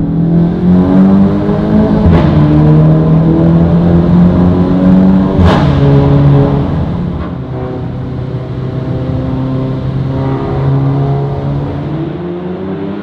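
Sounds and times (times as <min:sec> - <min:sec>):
exhaust crack: 0:05.1 - 0:09.0.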